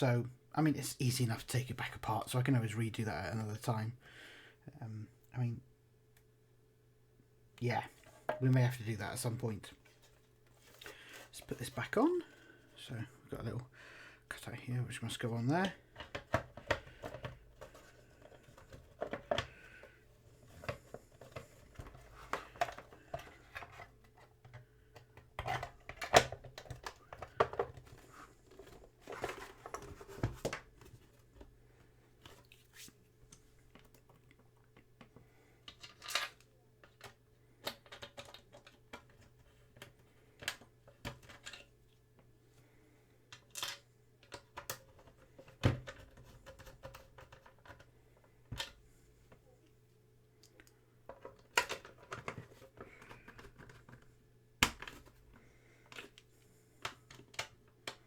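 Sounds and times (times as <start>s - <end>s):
small parts clicking and tapping: 33.7s - 41.7s.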